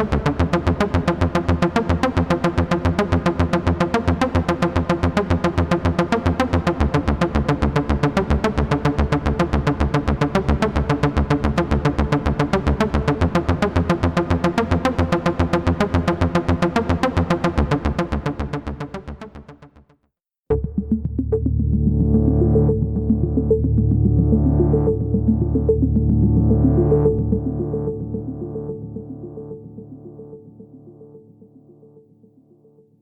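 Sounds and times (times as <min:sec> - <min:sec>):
synthesizer pulsing notes: 0:00.0 - 0:19.9, 0:20.5 - 0:32.1
heavy bass: 0:15.1 - 0:19.6, 0:20.5 - 0:29.0.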